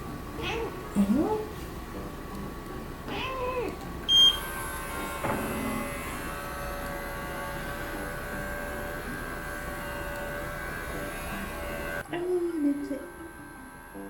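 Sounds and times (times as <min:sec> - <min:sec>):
appliance humming with a whine: 0:00.0 - 0:14.0
electronic beep: 0:04.1 - 0:04.4.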